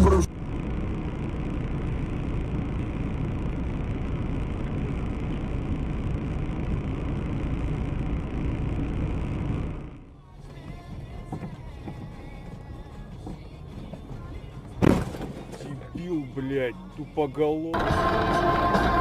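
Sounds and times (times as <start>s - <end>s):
car driving rumble: 0.0s - 19.0s.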